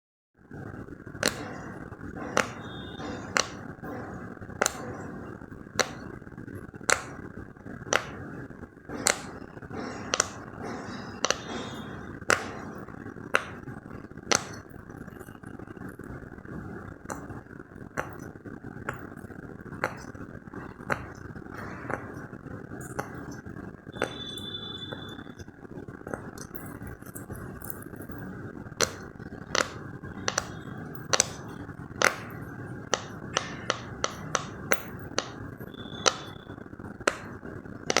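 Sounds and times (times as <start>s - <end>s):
sharp pops: 6.8s - 14.7s.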